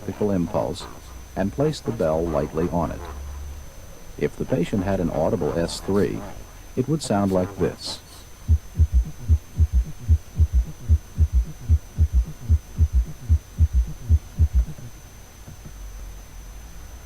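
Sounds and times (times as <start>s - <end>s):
low hum: 0.0s - 17.0s
galloping heartbeat thumps: 8.5s - 14.9s.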